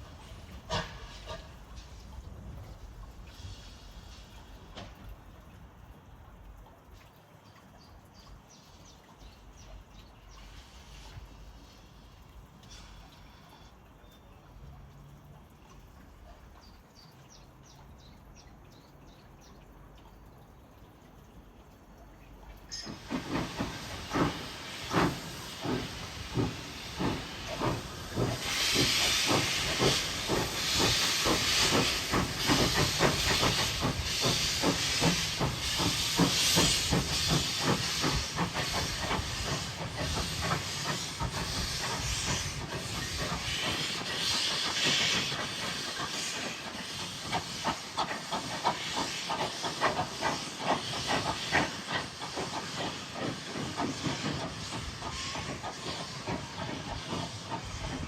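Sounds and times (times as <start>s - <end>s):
loud steam hissing: 0.0s - 2.1s, 3.3s - 4.8s, 10.4s - 12.1s, 22.8s - 58.0s
steam locomotive chuffing: 0.0s - 5.1s, 10.3s - 13.7s, 22.7s - 58.0s.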